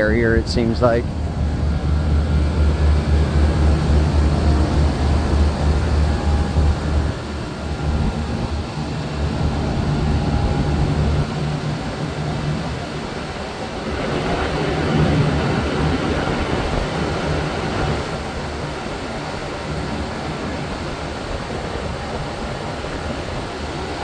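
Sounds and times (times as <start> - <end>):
hvac units droning: 0.0 - 24.0.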